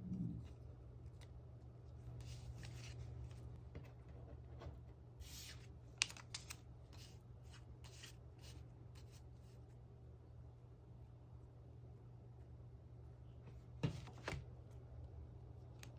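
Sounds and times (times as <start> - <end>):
steady low hum: 0.0 - 15.9
paper rustling: 2.2 - 3.5, 4.6 - 9.2.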